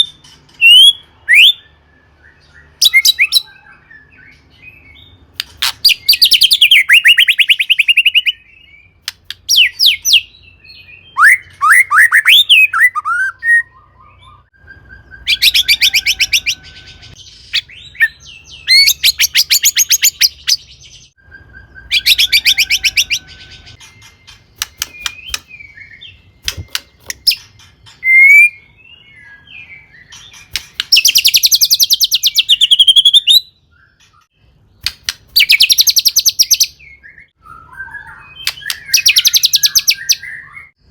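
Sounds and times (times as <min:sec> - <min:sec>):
bird singing whistled phrases: 0:00.0 - 0:05.2, 0:05.8 - 0:23.9, 0:28.0 - 0:30.2, 0:30.9 - 0:34.0, 0:35.4 - 0:40.8
bird rattling trills: 0:23.7 - 0:25.5.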